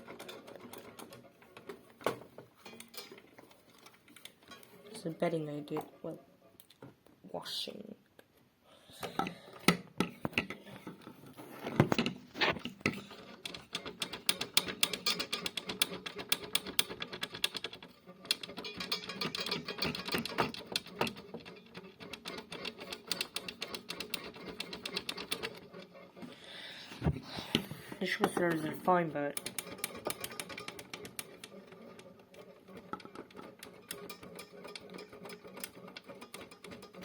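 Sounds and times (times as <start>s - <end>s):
fast dense clicking and rattling: 11.8s - 26.2s, 28.1s - 37.0s.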